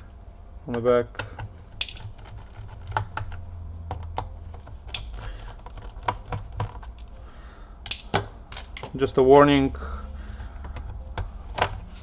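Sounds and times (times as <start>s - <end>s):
low steady hum: 0.0s - 12.0s
screwdriver clicking on plastic: 0.7s - 7.1s.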